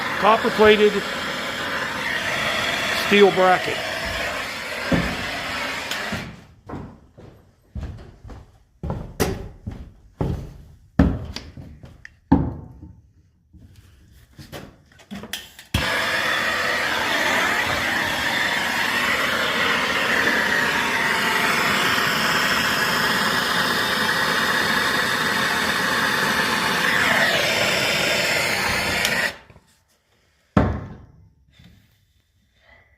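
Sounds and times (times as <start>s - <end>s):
soldering torch hissing: 0.0s - 6.2s, 15.8s - 29.5s.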